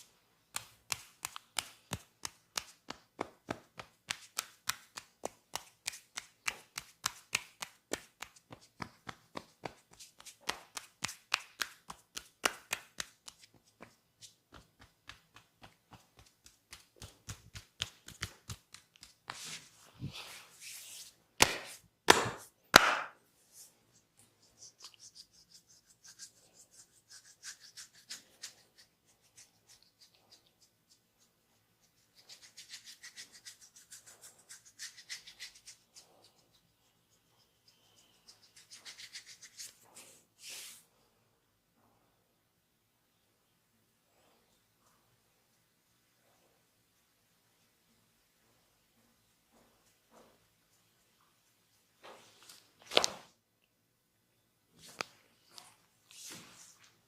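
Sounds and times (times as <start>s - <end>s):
hand slaps: 0.5s - 19.5s, 21.4s - 23.2s
faint rubbing of scalp: 15.3s - 21.2s, 23.4s - 40.9s, 54.8s - 57.0s
hands chopping on head: 21.4s - 23.2s.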